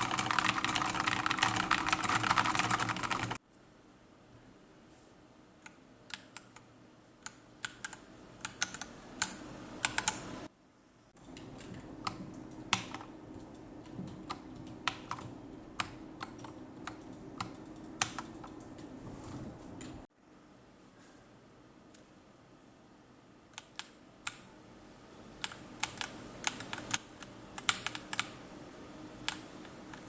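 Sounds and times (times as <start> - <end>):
mechanical keyboard typing: 0.0 - 3.4, 7.2 - 10.2, 14.1 - 18.7, 25.4 - 28.4, 29.2 - 30.0.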